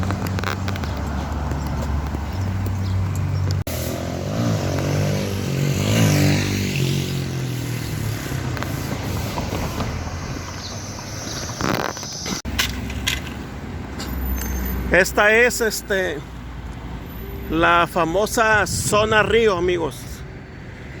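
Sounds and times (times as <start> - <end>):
vehicle engine passing: 0.0 - 11.6
road noise: 0.0 - 21.0.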